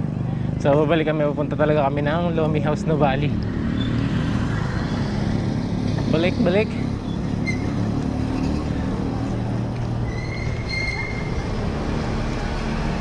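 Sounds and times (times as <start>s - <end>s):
road and wind noise: 0.0s - 13.0s
vehicle engine low hum: 0.0s - 13.0s
thin high squeal: 10.0s - 11.4s.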